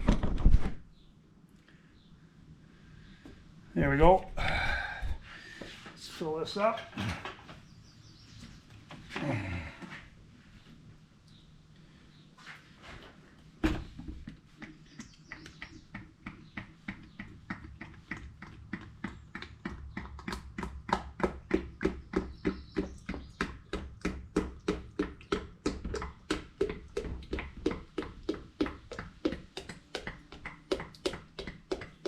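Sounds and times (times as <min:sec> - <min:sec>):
oil glugging from a jug: 0:13.8 - 0:31.6.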